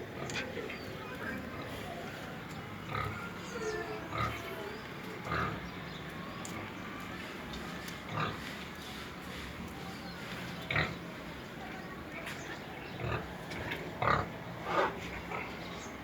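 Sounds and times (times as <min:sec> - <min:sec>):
din of many animals: 0:00.0 - 0:16.0
pigs grunting: 0:02.8 - 0:04.7, 0:08.1 - 0:08.5, 0:10.7 - 0:11.0, 0:12.9 - 0:16.0.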